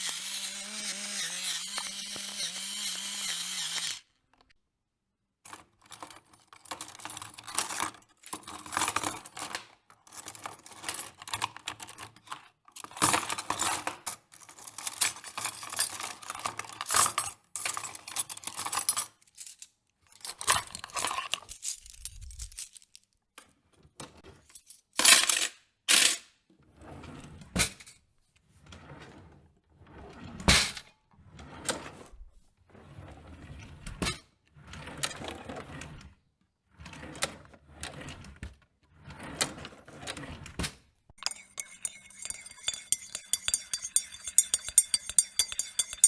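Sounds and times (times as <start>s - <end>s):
utensils and dishware clinking: 41.2s - 46.0s.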